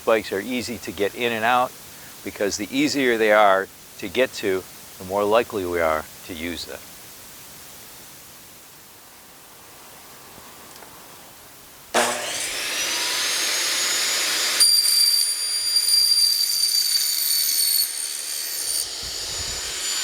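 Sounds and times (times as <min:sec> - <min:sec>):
electric power tool motor whining: 0:12.0 - 0:20.0.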